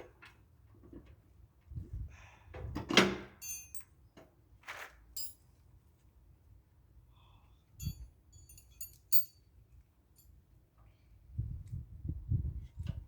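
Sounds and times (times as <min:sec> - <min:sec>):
wrenches and metal parts clanking: 0:03.4 - 0:04.0, 0:05.2 - 0:05.4, 0:07.8 - 0:09.4.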